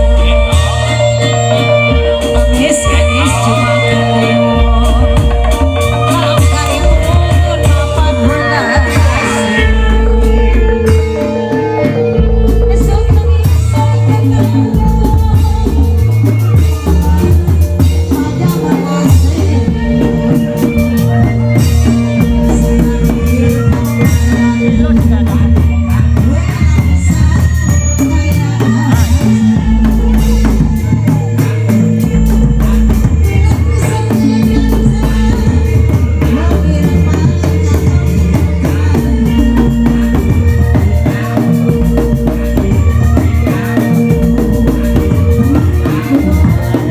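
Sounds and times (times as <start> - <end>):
live ensemble music: 0.0 - 46.9
repeating bass line: 0.0 - 46.9
steady drum beat: 0.0 - 46.9.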